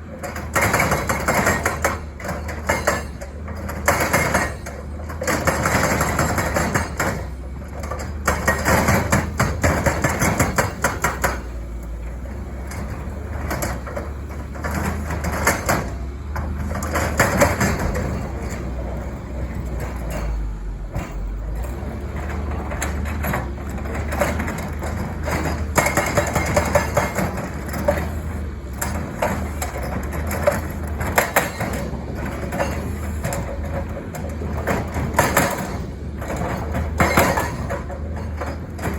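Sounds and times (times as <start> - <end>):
excavator diesel engine running: 0.0 - 38.9
hydraulic breaker hammering: 8.0 - 11.7, 22.8 - 28.2, 28.8 - 38.9.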